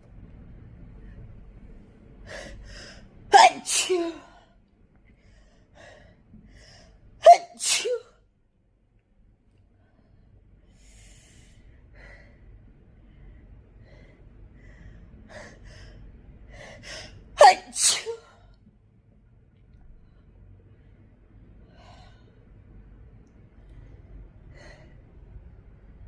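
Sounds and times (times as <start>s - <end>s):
person sneezing: 3.3s - 4.4s, 7.2s - 8.1s, 17.4s - 18.3s.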